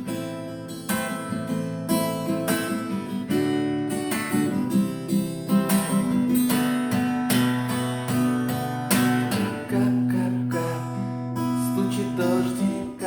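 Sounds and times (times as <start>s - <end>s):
acoustic guitar strumming: 0.0s - 13.0s.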